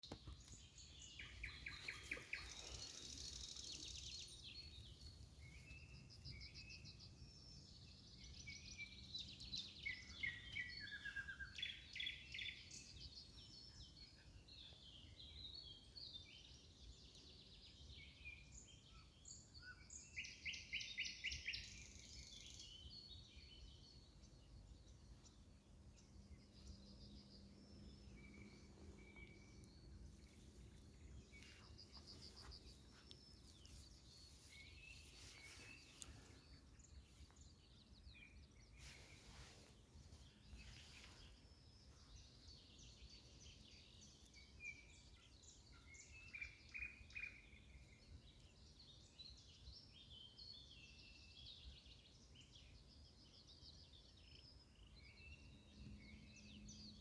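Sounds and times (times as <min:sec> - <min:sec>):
nightingales singing trills: 0:00.4 - 0:15.1.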